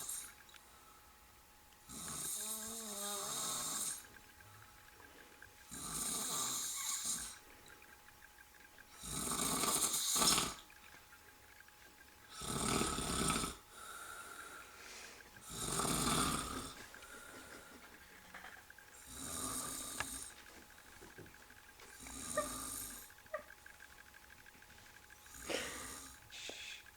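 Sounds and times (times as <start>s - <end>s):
man snoring: 1.9s - 4.0s, 5.7s - 7.4s, 9.0s - 10.6s, 12.3s - 13.6s, 15.4s - 16.8s, 19.0s - 20.3s, 25.3s - 26.2s.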